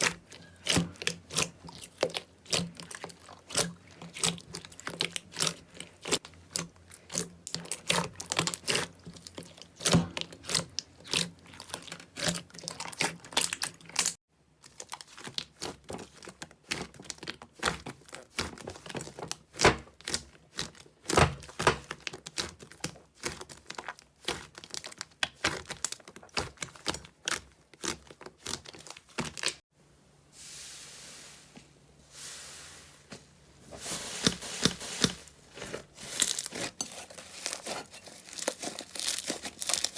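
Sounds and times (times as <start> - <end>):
slime crackling and popping: 0.0 - 29.6, 34.3 - 39.9
soft hissing: 30.2 - 35.2.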